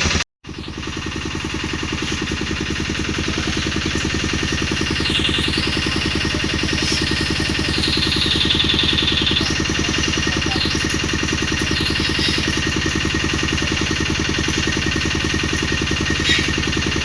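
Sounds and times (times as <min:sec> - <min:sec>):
pressure washer pump humming: 0:00.0 - 0:17.0.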